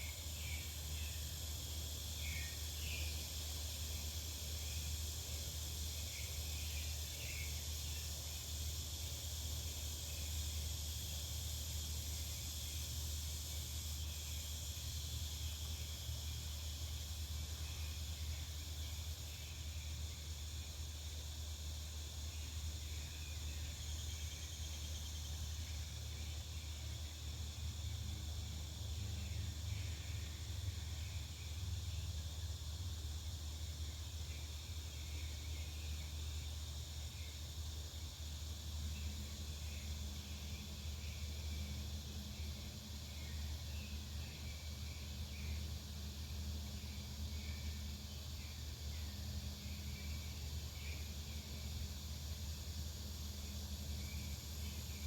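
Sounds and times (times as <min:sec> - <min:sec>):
insect chorus: 0:00.0 - 0:55.0.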